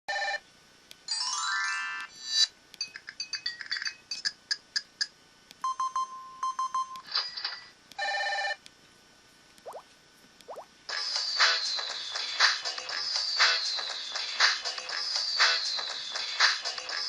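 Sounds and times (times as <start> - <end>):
phone beeps and chimes: 5.6 - 7.1.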